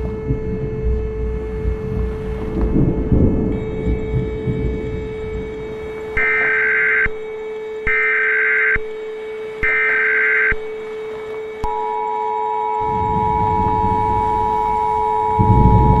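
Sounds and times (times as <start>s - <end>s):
low hum: 0.0s - 16.0s
screeching digital data tones: 3.4s - 10.8s, 11.5s - 16.0s
two-tone attention signal: 3.4s - 16.0s.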